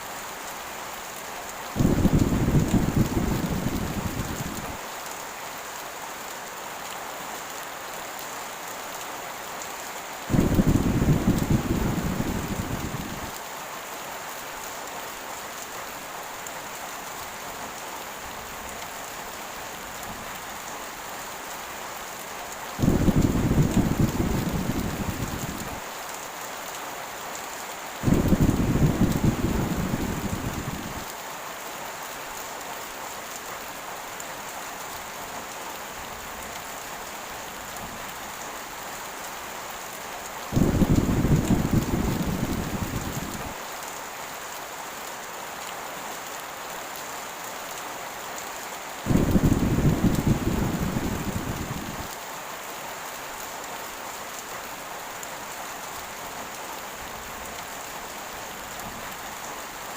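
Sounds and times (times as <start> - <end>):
heavy rain: 0.0 - 59.9
thunder rumbling: 1.8 - 4.8, 10.3 - 13.3, 22.8 - 25.8, 28.0 - 31.1, 40.5 - 43.6, 49.1 - 52.1.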